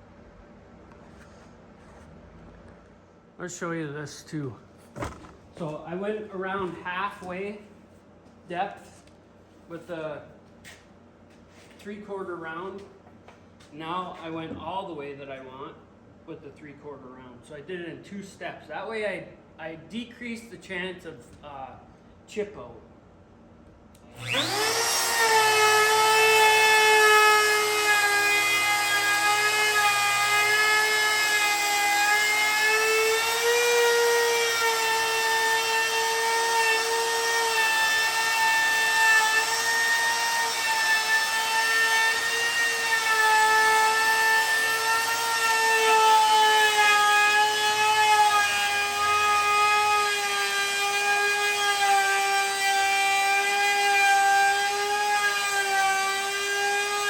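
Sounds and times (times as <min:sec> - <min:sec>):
wood router whining: 0:24.0 - 0:57.0.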